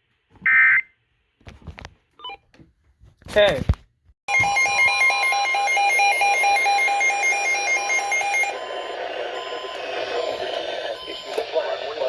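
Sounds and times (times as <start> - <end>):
rapid pulsing alarm beeps: 5.4 - 12.0
hissy radio signal: 8.5 - 12.0.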